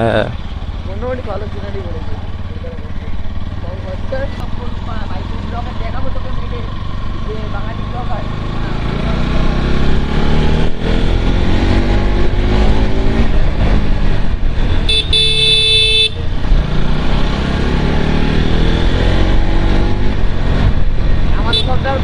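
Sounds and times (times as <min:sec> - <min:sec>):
motorcycle engine accelerating: 0:00.0 - 0:22.0
vehicle horn: 0:14.8 - 0:16.3, 0:21.4 - 0:21.8.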